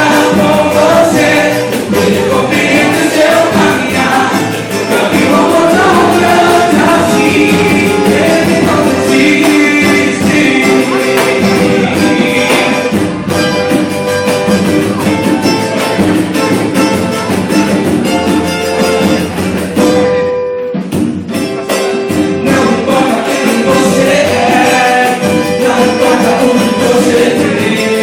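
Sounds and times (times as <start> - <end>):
voices singing: 0.0 - 14.0, 22.1 - 28.0
hand percussion beat: 0.0 - 28.0.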